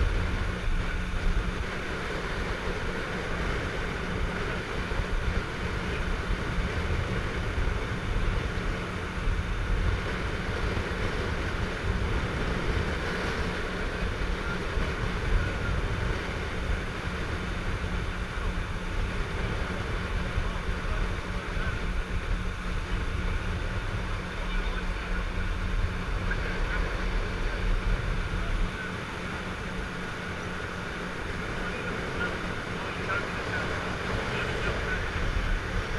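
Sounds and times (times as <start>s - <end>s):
motorboat engine drone: 0.0s - 35.9s
rushing water: 0.0s - 35.9s.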